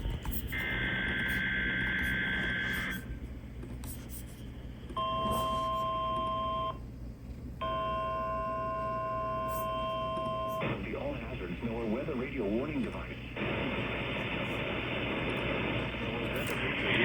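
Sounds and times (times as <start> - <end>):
steady alarm tone: 0.0 - 3.2, 4.9 - 6.8, 7.6 - 15.8
radio hiss and hum: 0.0 - 5.8, 10.5 - 17.0.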